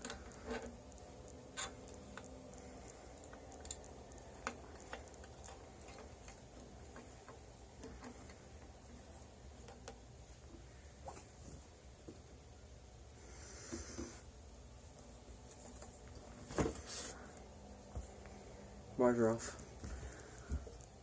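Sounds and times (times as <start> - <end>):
hand tools clicking and tapping: 0.0 - 8.8
low steady hum: 0.0 - 21.0.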